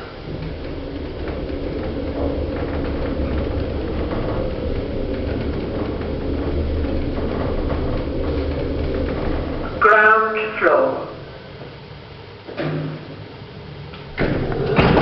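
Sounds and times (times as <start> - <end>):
lift hum and rumble: 0.0 - 15.0.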